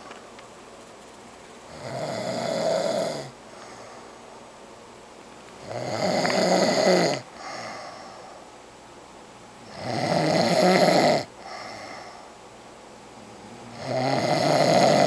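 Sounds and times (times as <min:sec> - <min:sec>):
person snoring heavily: 0:01.7 - 0:04.0, 0:05.6 - 0:08.2, 0:09.7 - 0:12.2, 0:13.7 - 0:15.0
quiet breathing: 0:01.7 - 0:04.5, 0:06.8 - 0:08.6, 0:11.3 - 0:12.5.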